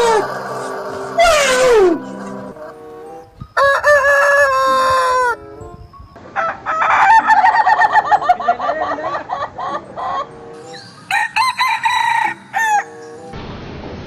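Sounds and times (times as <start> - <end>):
rooster crowing: 3.6 - 5.5, 6.3 - 8.1, 11.1 - 13.0
chicken clucking rapidly: 6.8 - 10.3.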